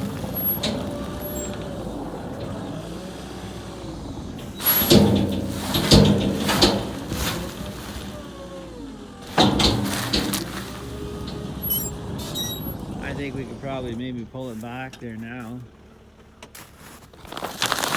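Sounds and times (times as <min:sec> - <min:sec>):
loader engine running: 0:00.0 - 0:17.9
scraping crunching of snow: 0:16.6 - 0:17.9.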